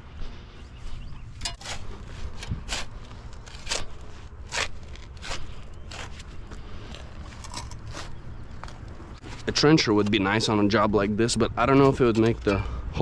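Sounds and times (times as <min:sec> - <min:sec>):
hand tool scraping in soil: 0:00.8 - 0:10.2.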